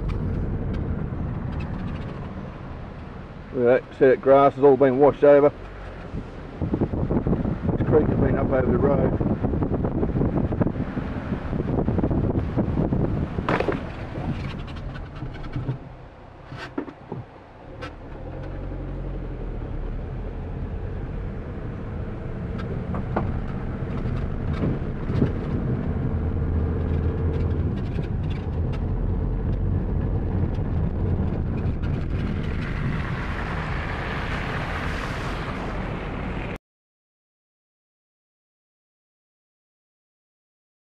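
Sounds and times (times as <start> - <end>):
sharp clicks and knocks: 0.0 - 2.4, 13.4 - 18.6, 22.5 - 33.1
car engine running: 0.0 - 2.5, 22.2 - 34.0
road noise: 0.0 - 36.6.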